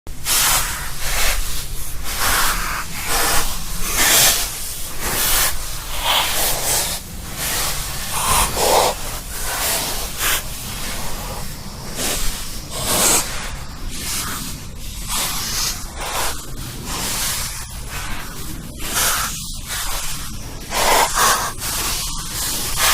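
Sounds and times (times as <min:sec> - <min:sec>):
person breathing heavily: 0:00.4 - 0:15.5.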